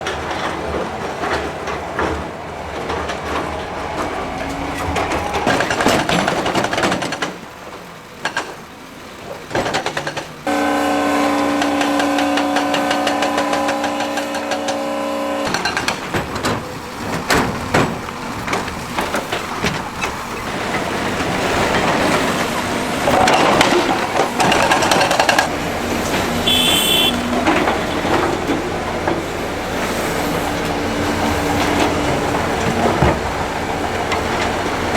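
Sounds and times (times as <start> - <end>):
machinery clanks and knocks: 0.0 - 10.5, 11.6 - 34.9
diesel engines running: 0.0 - 34.9.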